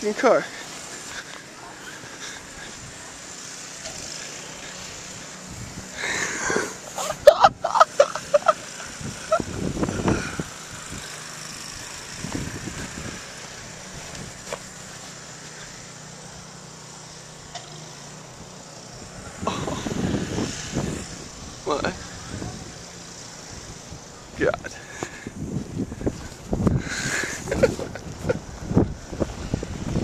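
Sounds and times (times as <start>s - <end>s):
footsteps crunching through snow: 0.0s - 8.4s, 10.9s - 16.2s, 25.0s - 28.3s
low engine-like hum: 0.4s - 30.0s.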